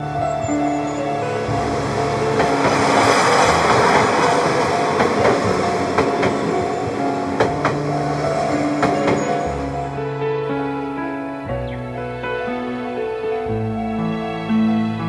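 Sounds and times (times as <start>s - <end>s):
wheels clacking over rail joints: 0.0s - 10.0s
electric train running past: 0.0s - 12.1s.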